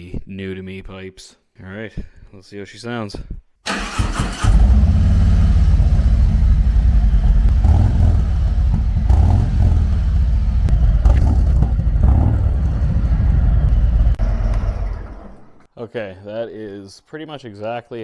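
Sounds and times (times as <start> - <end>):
motorcycle engine running: 4.4 - 15.4.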